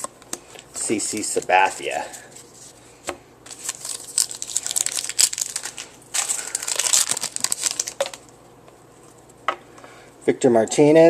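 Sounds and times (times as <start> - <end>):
foil wrapper crinkling: 3.4 - 8.3.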